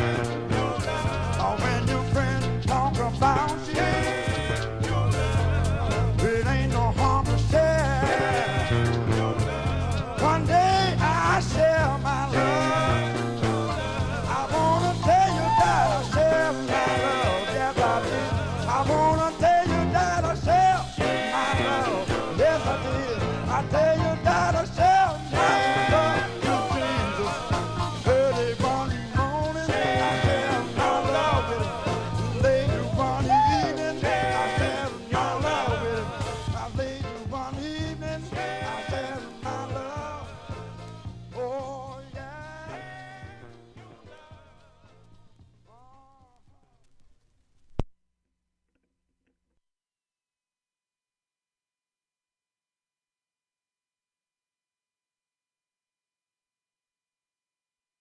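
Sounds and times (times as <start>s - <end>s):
soul-funk instrumental music: 0.0s - 46.3s.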